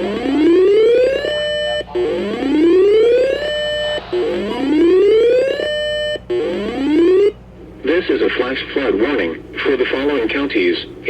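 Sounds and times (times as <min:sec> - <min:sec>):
electronic alarm rising whoops: 0:00.0 - 0:07.4.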